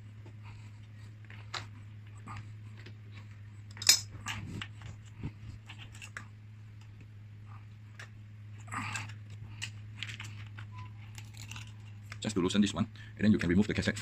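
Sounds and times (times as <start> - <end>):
steel tools clinking: 3.7 - 4.1.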